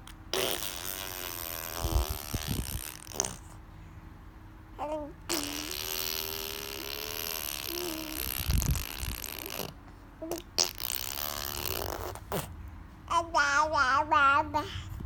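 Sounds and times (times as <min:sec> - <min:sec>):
baby blowing raspberries: 0:00.3 - 0:03.6, 0:05.3 - 0:12.6
baby vocalizing: 0:00.3 - 0:03.6, 0:04.8 - 0:12.6.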